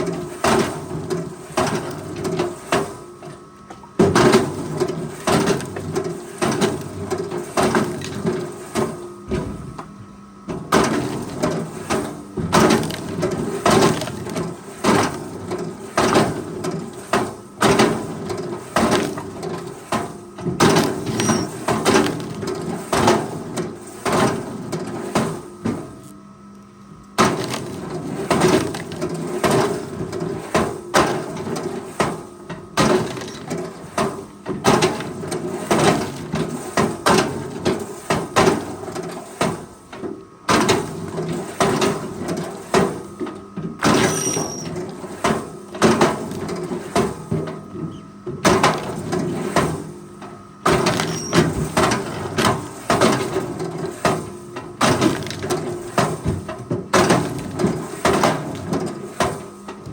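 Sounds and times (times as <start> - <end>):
machine engine hum: 0.0 - 24.0.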